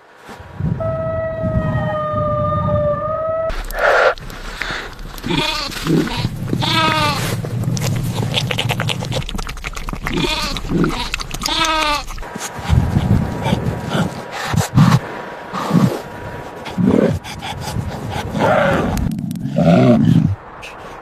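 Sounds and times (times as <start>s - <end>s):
low rumble: 0.5s - 20.7s
animal bleating: 5.2s - 9.0s, 10.1s - 12.2s.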